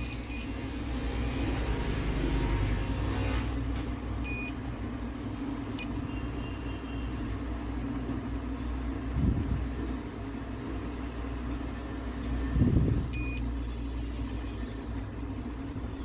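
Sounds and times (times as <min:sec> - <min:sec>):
multimeter beep: 0:00.0 - 0:00.6, 0:04.2 - 0:04.6, 0:13.1 - 0:13.4.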